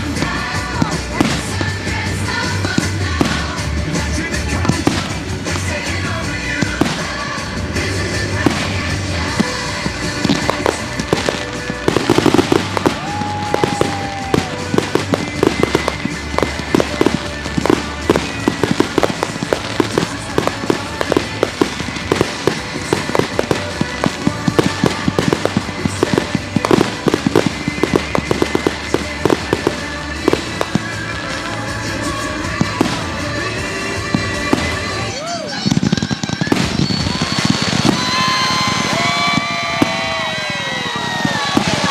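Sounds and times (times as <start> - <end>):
fireworks bangs and crackling: 0.0 - 41.9
music playing: 0.0 - 41.9
firework whistle: 10.4 - 24.0, 36.5 - 41.9.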